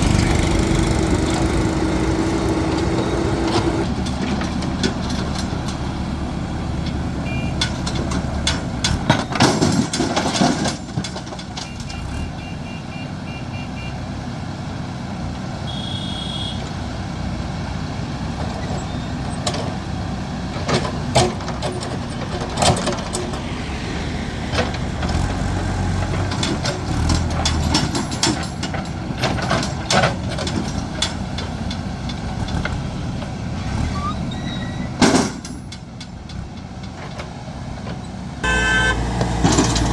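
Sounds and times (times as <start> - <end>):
diesel engines running: 0.0 - 39.9
metal knocks and clanks: 7.6 - 11.8, 20.5 - 23.4, 24.5 - 33.4, 39.2 - 39.9
short beeps: 38.4 - 39.0.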